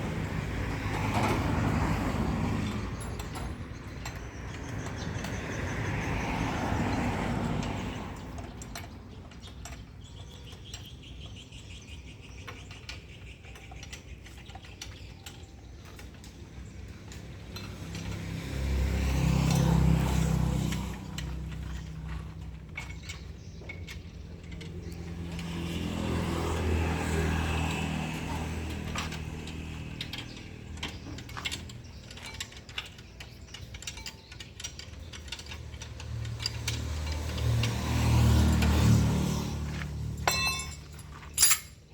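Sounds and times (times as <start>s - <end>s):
metallic clicks and clinks: 0.0s - 41.9s
engine running: 15.8s - 41.9s.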